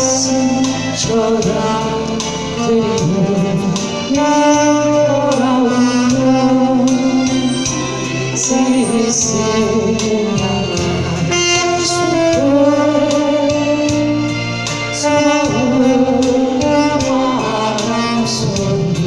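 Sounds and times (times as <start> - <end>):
backing track with steady beat: 0.0 - 19.0
saxophone melody: 0.0 - 19.0.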